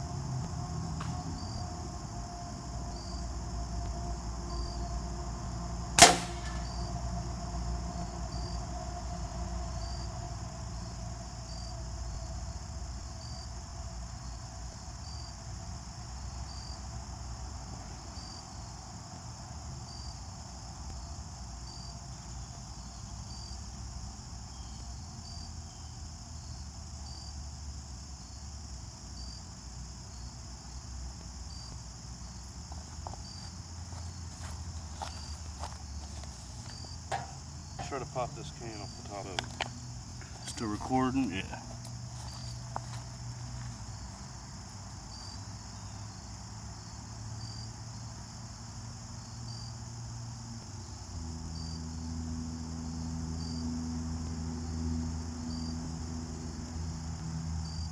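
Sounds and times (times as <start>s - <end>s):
crickets chirping: 0.0s - 57.9s
rifle shot: 6.0s - 6.9s.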